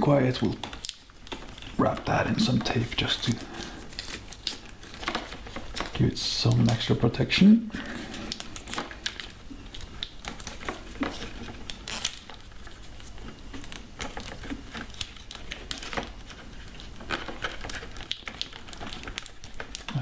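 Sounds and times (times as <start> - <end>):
tape crinkling and crackling: 0.0 - 20.0.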